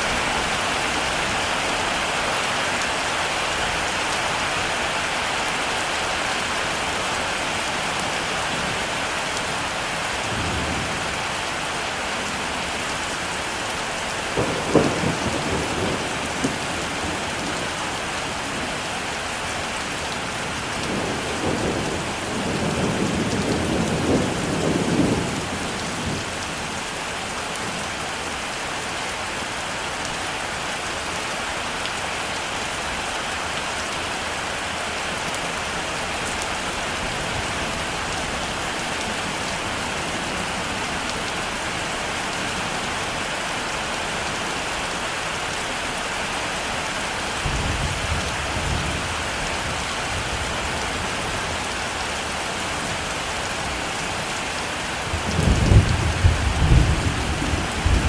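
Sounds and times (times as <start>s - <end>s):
heavy rain falling: 0.0s - 58.0s
thunder rumbling: 14.4s - 17.8s, 55.1s - 58.0s.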